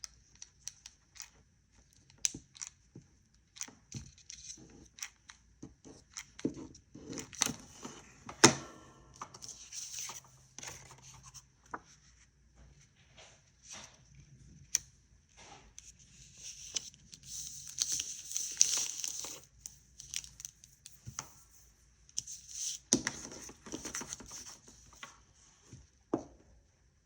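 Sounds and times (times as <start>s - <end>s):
paper rustling: 15.4s - 20.5s.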